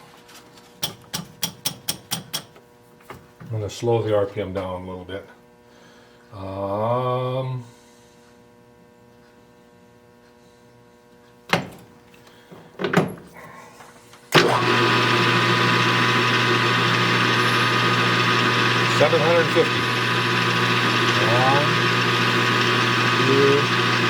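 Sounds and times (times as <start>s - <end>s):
lathe motor humming: 14.3s - 24.0s.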